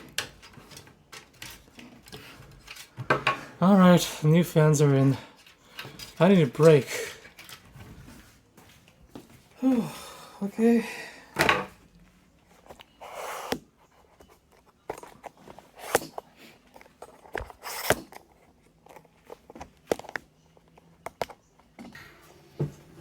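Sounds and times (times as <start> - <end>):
clicks and knocks of computer parts: 0.0 - 3.5.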